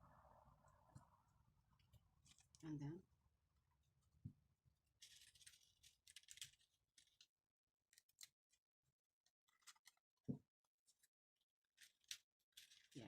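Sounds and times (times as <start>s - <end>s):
paper rustling and scraping: 4.9s - 7.3s, 9.5s - 10.0s, 11.7s - 13.0s.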